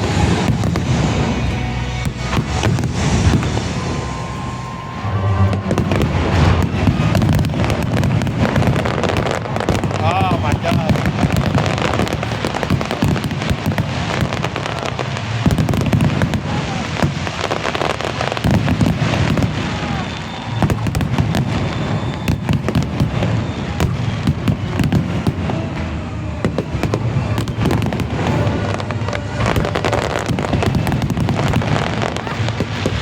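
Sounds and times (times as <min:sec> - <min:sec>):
deep rumble: 0:00.0 - 0:10.0
fireworks bangs and crackles: 0:00.0 - 0:33.0.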